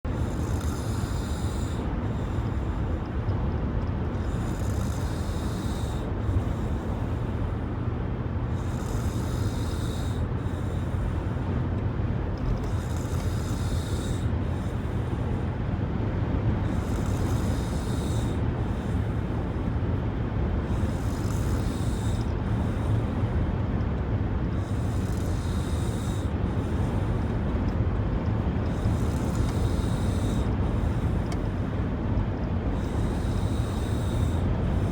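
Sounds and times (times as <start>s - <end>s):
steady low rumble: 0.1s - 34.9s
person snoring: 0.2s - 1.9s, 4.4s - 6.1s, 8.6s - 10.3s, 20.7s - 22.3s, 24.6s - 26.3s, 32.8s - 34.9s.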